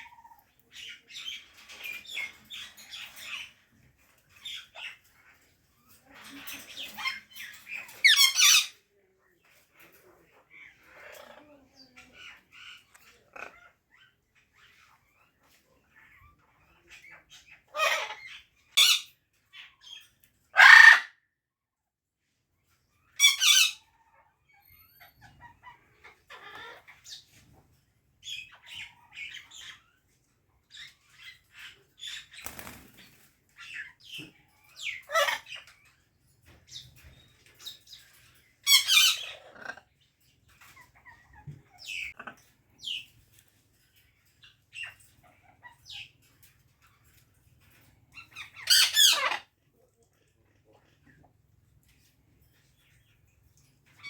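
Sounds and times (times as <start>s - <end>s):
parrot screeching and chirping: 6.4s - 8.8s, 17.1s - 21.2s, 23.1s - 27.2s, 34.7s - 35.8s, 37.4s - 39.8s, 48.1s - 49.5s.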